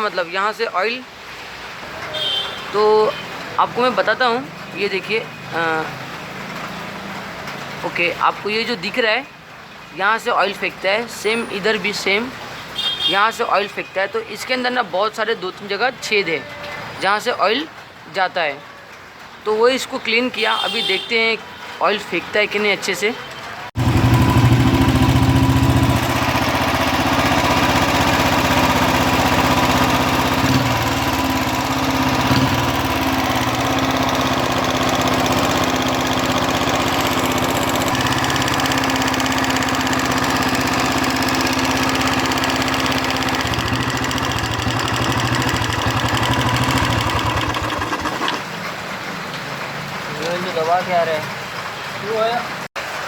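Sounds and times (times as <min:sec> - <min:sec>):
motorcycle engine idling: 0:23.8 - 0:48.4.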